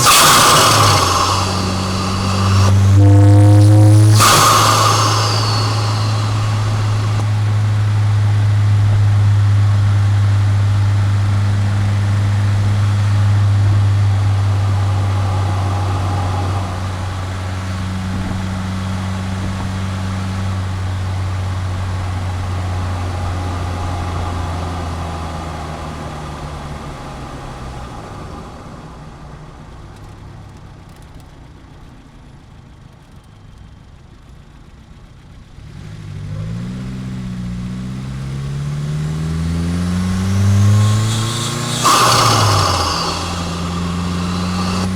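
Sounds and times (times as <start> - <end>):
car engine low drone: 0.0 - 27.3, 36.3 - 44.9.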